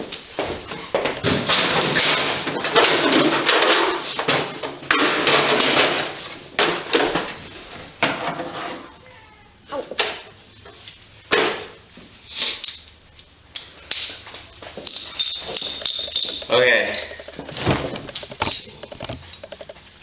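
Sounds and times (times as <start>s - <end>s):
hard objects clattering and scraping: 15.0s - 19.8s
sharp knocks: 15.6s - 19.8s.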